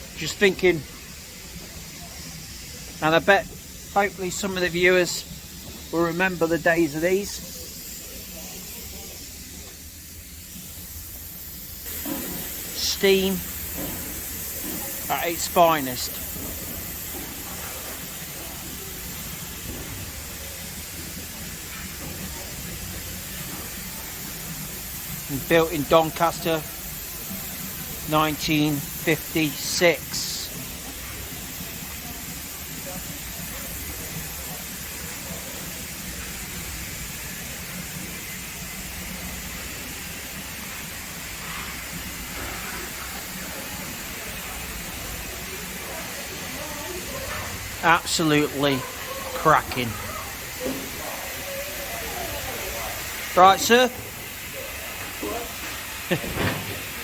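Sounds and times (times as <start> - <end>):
steam hissing: 0.0 - 57.0
faint voices: 11.9 - 57.0.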